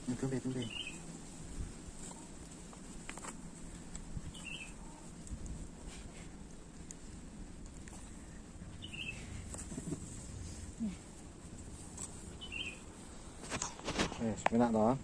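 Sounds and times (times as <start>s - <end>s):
bird chirping: 0.6s - 1.1s, 4.3s - 5.1s, 8.7s - 9.4s, 12.3s - 12.9s.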